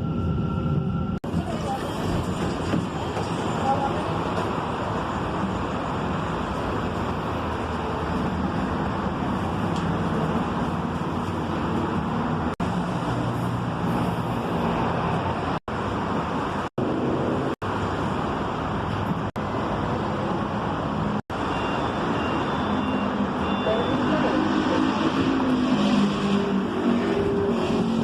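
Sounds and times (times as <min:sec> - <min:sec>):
metro train running: 0:00.0 - 0:15.6, 0:19.8 - 0:28.0.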